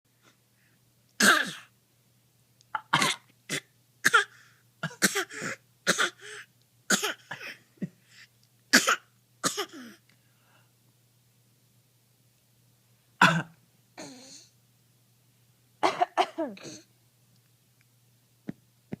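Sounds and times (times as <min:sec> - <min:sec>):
person fake coughing: 0:01.2 - 0:01.7, 0:02.8 - 0:06.2, 0:06.9 - 0:07.6, 0:08.8 - 0:10.0, 0:13.2 - 0:14.4, 0:15.8 - 0:16.9.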